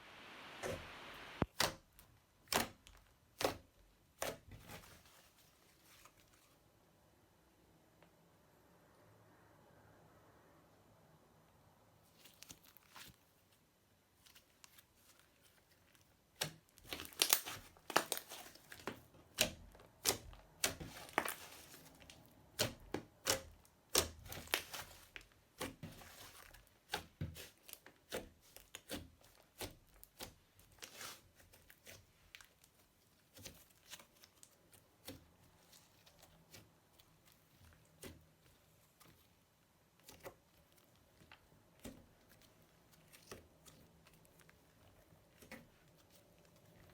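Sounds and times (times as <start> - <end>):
slime crackling and popping: 16.3 - 38.2.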